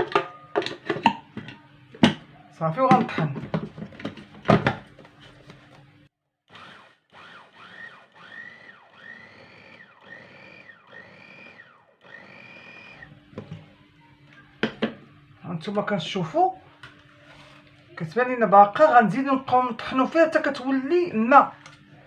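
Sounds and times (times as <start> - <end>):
food chopper motor whine: 6.5 - 14.0.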